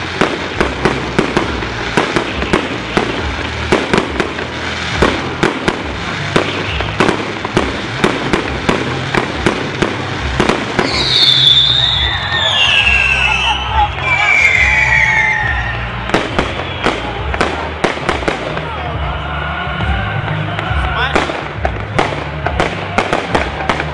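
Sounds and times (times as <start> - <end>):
firework bangs and crackles: 0.0 - 23.9
high wavering whistle: 10.9 - 15.9.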